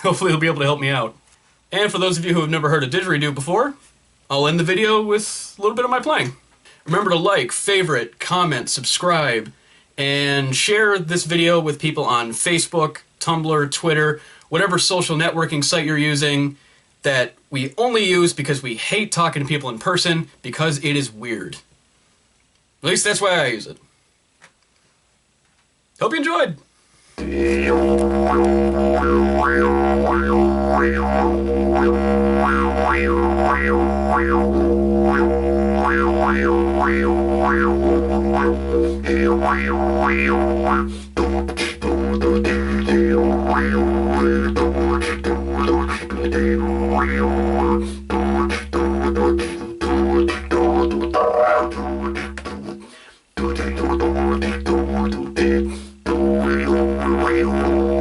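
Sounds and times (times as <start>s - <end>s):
didgeridoo drone: 27.2s - 52.8s, 53.4s - 58.0s.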